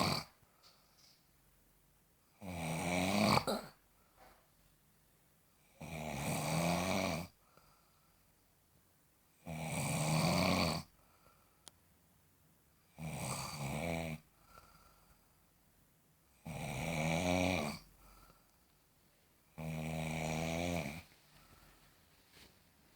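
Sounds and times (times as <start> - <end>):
person snoring: 0.0 - 0.4, 2.4 - 3.7, 9.5 - 10.9, 13.0 - 14.2, 16.4 - 17.9, 19.6 - 21.1
quiet breaths: 0.0 - 2.5, 3.8 - 5.9, 6.7 - 22.9.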